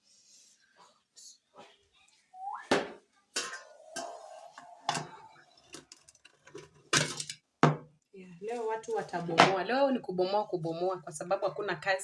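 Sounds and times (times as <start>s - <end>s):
metal pots and utensils clinking: 3.3s - 7.8s.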